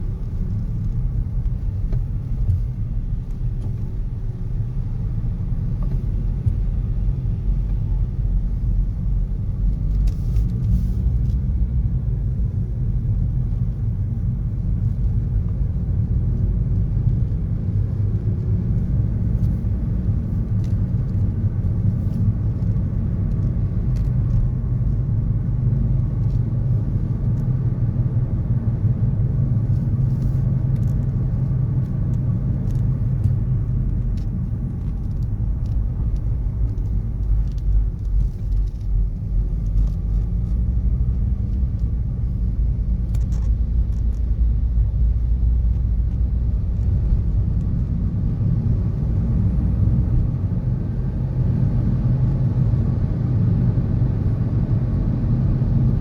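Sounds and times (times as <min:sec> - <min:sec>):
city road traffic rumble: 0:00.0 - 0:56.0.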